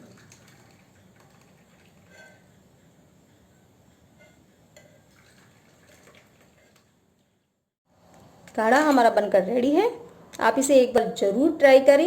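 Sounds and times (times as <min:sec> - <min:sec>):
liquid trickling into cups: 0:00.0 - 0:02.1, 0:05.1 - 0:06.8.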